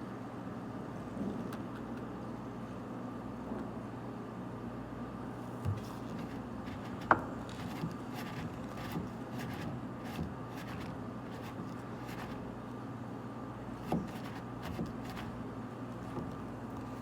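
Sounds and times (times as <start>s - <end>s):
rubbing: 5.7s - 12.5s, 13.8s - 17.0s.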